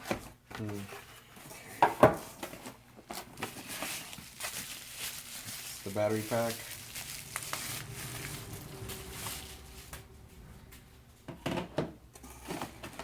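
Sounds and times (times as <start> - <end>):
packaging rustling: 2.5 - 10.3.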